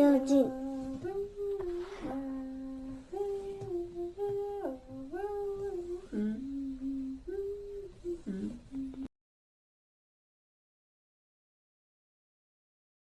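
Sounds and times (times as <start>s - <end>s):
person humming a melody: 0.0s - 9.1s.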